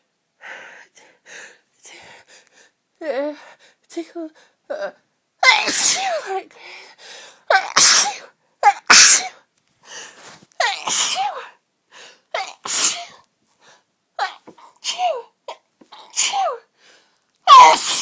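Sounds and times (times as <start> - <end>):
person sneezing: 5.4 - 6.3, 7.5 - 9.4, 10.2 - 11.5, 12.4 - 13.2, 16.0 - 16.6, 17.5 - 18.0.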